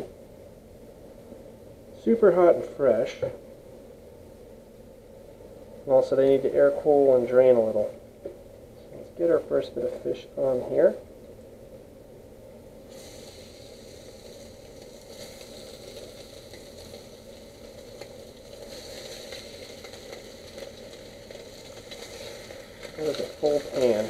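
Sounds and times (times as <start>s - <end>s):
fish sizzling in oil: 12.8s - 24.0s.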